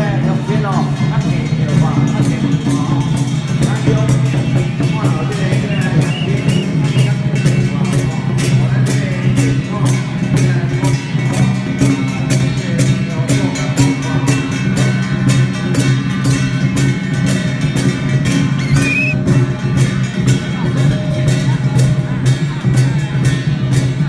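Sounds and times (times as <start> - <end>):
held low tone: 5.6 - 7.3, 18.6 - 19.3
loud music with quick beat: 17.2 - 20.0.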